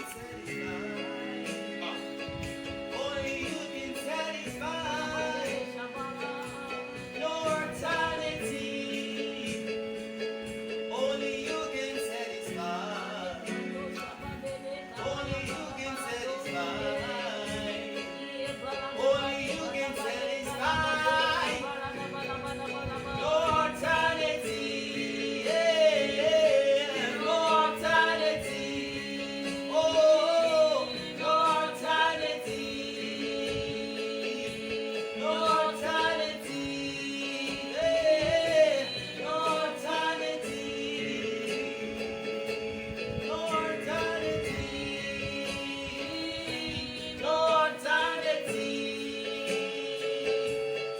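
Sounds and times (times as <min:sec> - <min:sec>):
person singing with vibrato: 0:00.0 - 0:50.9
sustained accompanying chords: 0:00.0 - 0:50.9.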